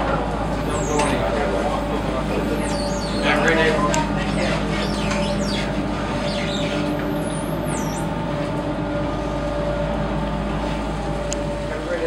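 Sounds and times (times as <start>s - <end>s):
boat engine rumbling: 0.0s - 12.0s
high warbling whistle: 0.7s - 3.7s, 4.8s - 8.1s.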